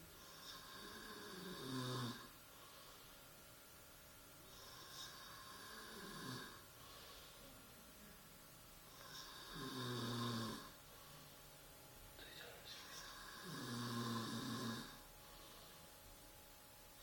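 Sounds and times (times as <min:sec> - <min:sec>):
man snoring: 0:00.2 - 0:02.4, 0:04.5 - 0:07.2, 0:08.9 - 0:10.8, 0:12.8 - 0:15.6.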